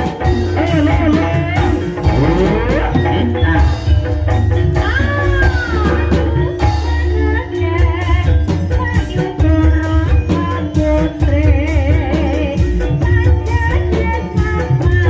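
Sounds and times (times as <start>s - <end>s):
person singing: 0.0s - 4.1s
drum strokes: 0.0s - 6.4s
gamelan metallic tones: 0.0s - 15.0s.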